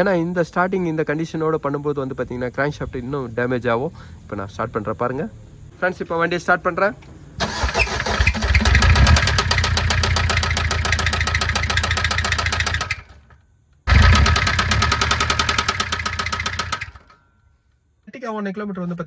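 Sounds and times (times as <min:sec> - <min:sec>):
car engine knocking heavily: 0:08.5 - 0:13.2, 0:13.9 - 0:17.0.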